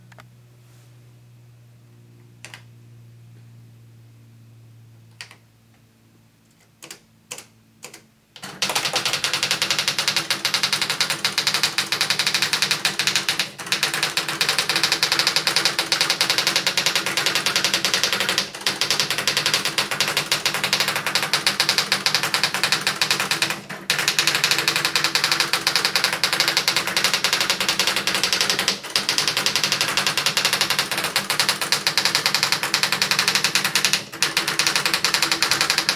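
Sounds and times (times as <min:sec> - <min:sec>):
typewriter printing strikes: 0:07.3 - 0:35.9.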